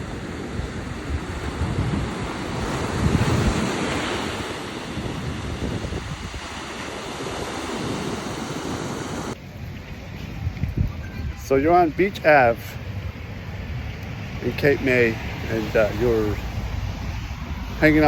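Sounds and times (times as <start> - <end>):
ocean surf on beach: 0.0 - 18.0
wind buffeting microphone: 0.0 - 18.0.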